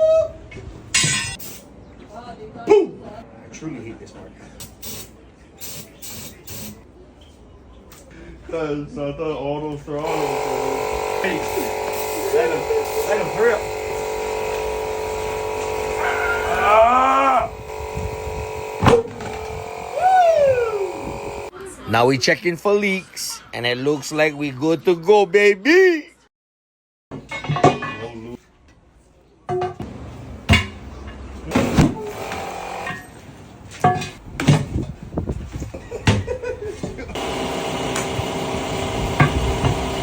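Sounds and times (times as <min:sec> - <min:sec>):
motor humming: 0:10.0 - 0:21.5, 0:31.6 - 0:33.0, 0:37.2 - 0:40.0
long rising and falling call: 0:16.0 - 0:17.5.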